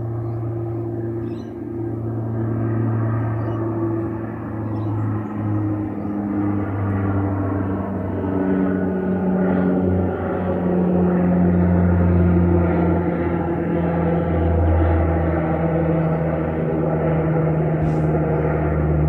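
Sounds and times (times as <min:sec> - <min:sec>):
turboprop propellers humming: 0:00.0 - 0:19.0
rushing engine noise: 0:17.6 - 0:19.0.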